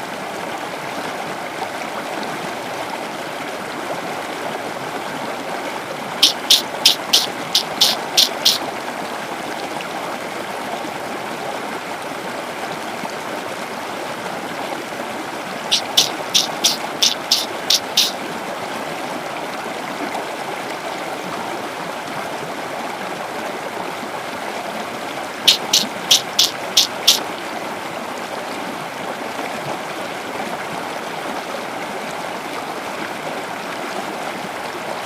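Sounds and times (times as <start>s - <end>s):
rushing water: 0.0s - 35.0s
high-pitched animal chirps: 6.2s - 8.6s, 15.7s - 18.2s, 25.5s - 27.2s.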